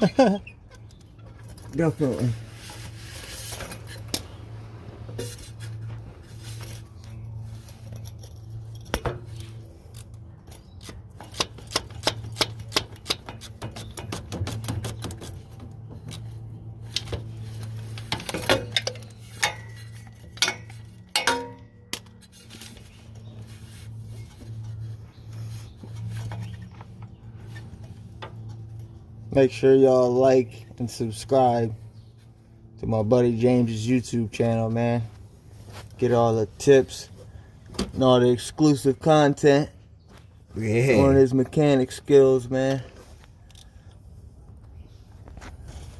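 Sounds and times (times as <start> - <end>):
metal tools clinking: 18.0 - 22.6.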